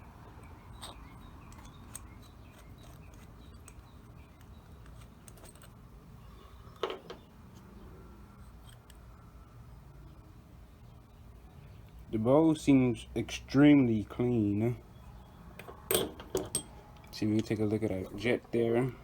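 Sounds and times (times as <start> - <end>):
small metal parts clinking: 0.4 - 5.8, 15.6 - 17.7.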